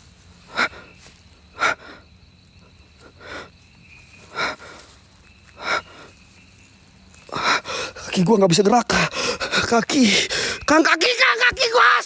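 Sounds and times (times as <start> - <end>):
man gasping for breath: 7.3 - 8.1, 9.0 - 10.7.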